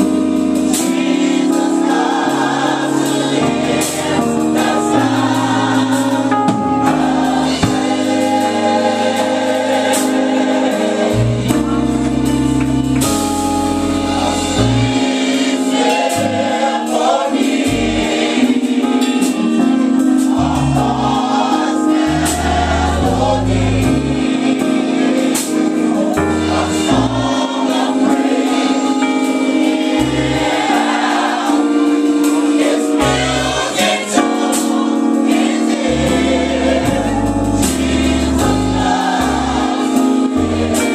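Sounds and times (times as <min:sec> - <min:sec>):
drums with cymbal strokes: 0:00.0 - 0:40.9
gospel choir singing: 0:00.0 - 0:40.9
bass: 0:05.0 - 0:09.4, 0:11.0 - 0:15.2, 0:17.7 - 0:18.2, 0:20.4 - 0:21.2, 0:22.1 - 0:24.3, 0:26.2 - 0:27.4, 0:35.9 - 0:40.9.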